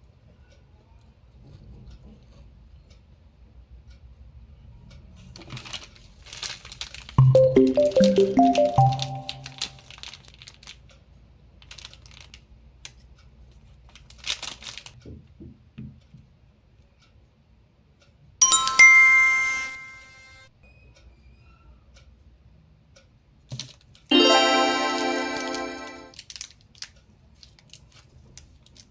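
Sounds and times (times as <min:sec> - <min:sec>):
candy wrappers crinkling: 0:05.4 - 0:07.2, 0:08.8 - 0:10.8, 0:11.6 - 0:12.4, 0:13.9 - 0:14.9, 0:26.2 - 0:28.9
bright chime ringing: 0:07.2 - 0:09.7, 0:18.4 - 0:20.5, 0:24.1 - 0:26.1
quick musical notes: 0:07.2 - 0:09.7, 0:24.1 - 0:26.1.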